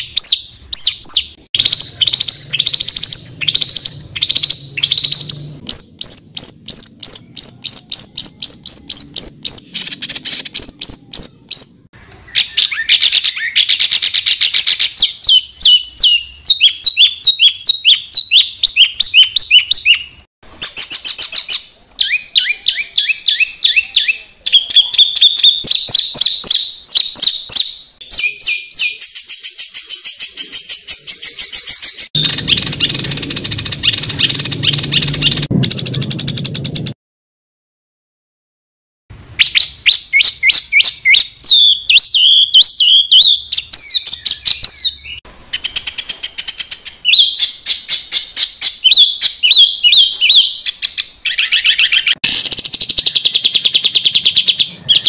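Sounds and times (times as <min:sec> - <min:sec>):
songbird singing high notes: 0:00.0 - 0:37.0.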